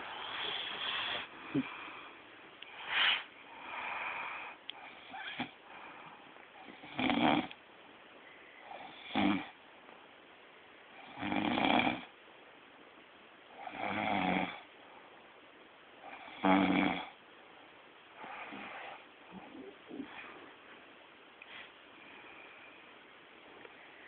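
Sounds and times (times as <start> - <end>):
man snoring: 6.7 - 7.5, 8.8 - 9.5, 11.0 - 12.1, 13.6 - 14.6, 16.2 - 17.2.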